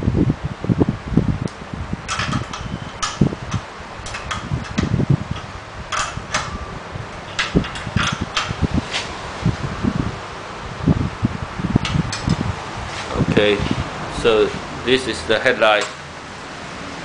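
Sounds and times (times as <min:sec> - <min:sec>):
low handling bumps: 0:01.4 - 0:14.8.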